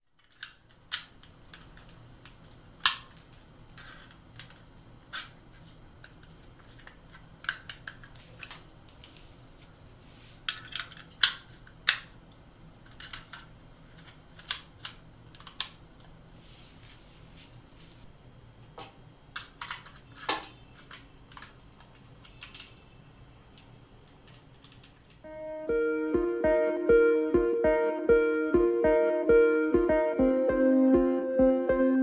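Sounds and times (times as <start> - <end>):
plastic parts clicking: 0.2 - 5.4, 6.0 - 9.1, 10.5 - 12.2, 12.8 - 16.2, 18.8 - 22.8, 23.6 - 25.2.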